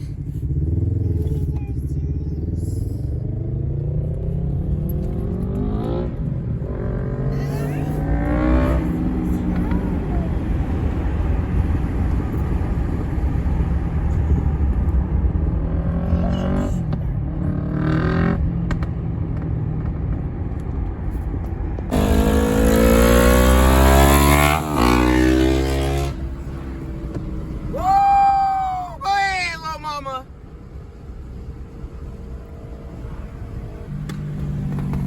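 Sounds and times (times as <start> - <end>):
motorcycle engine rumble: 0.0 - 35.0
wind: 0.0 - 35.0
motorcycle engine accelerating: 0.1 - 27.8, 30.3 - 35.0.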